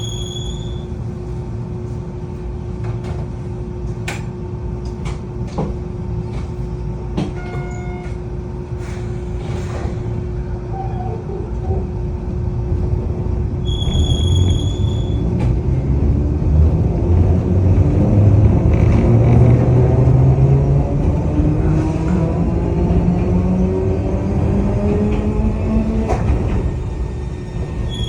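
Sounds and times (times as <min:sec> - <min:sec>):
short electronic beep: 0:00.0 - 0:00.9
train low rumble: 0:00.0 - 0:28.0.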